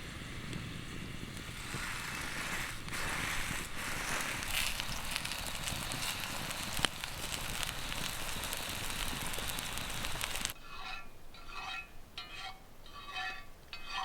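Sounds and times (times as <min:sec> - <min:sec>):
campfire crackling and hissing: 0:00.0 - 0:10.6.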